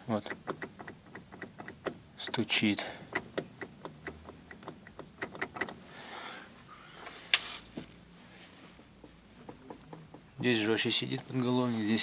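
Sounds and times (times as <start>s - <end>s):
headrest knocking in its mounts: 9.0s - 10.6s.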